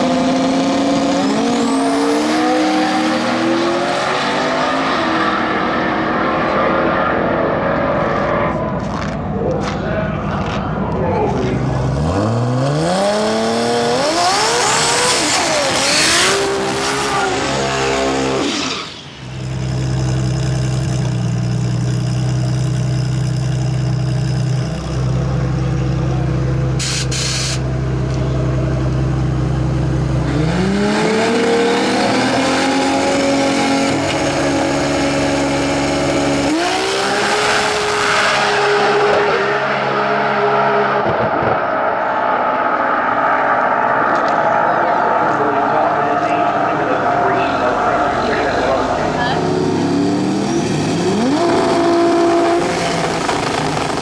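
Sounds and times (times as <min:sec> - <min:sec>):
drag race car accelerating: 0:00.0 - 0:54.0
low-pitched engine drone: 0:06.9 - 0:12.7, 0:38.8 - 0:54.0.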